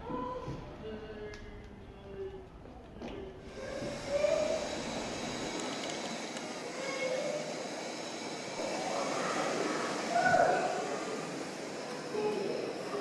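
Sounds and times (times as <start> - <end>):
steady hiss: 3.4 - 13.0.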